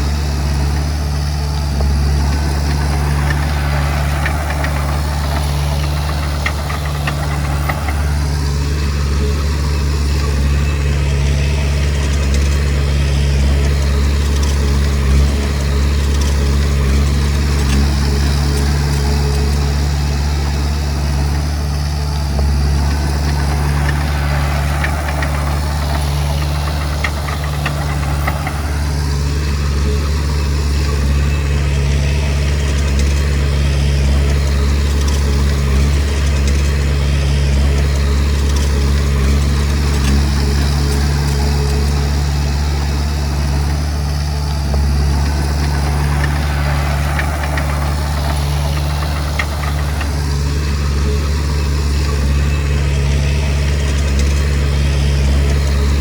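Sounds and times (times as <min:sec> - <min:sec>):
rough mid-range noise: 0:00.0 - 0:10.6, 0:19.6 - 0:30.6, 0:42.0 - 0:52.2
diesel engine running: 0:00.0 - 0:56.0.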